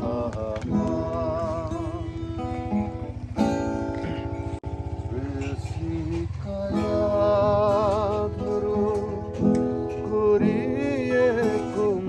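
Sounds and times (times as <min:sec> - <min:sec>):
person singing with vibrato: 0:00.0 - 0:03.2
guitar accompaniment: 0:00.0 - 0:12.0.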